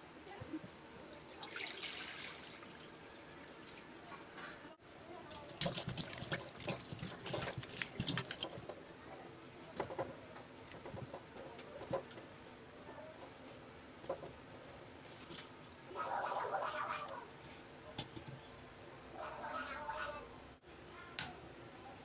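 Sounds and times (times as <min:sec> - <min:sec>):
water pouring and splashing: 0:01.2 - 0:04.0, 0:05.3 - 0:08.8.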